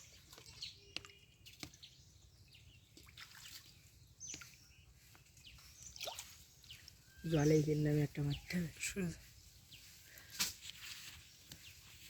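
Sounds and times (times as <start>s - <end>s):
faint bird chirps: 0.0s - 12.0s.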